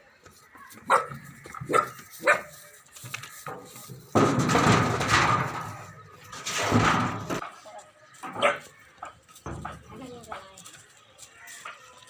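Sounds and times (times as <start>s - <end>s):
dog barking: 0.9s - 2.5s, 8.4s - 8.7s.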